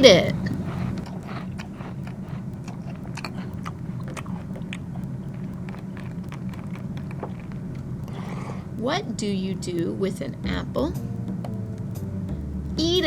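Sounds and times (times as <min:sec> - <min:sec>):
crunchy snack chewing: 0:00.0 - 0:08.8
steady low hum: 0:00.0 - 0:13.0.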